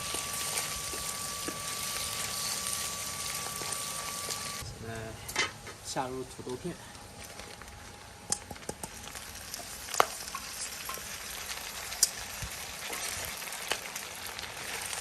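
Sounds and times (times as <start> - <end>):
food sizzling in hot oil: 0.0 - 4.6, 8.3 - 15.0.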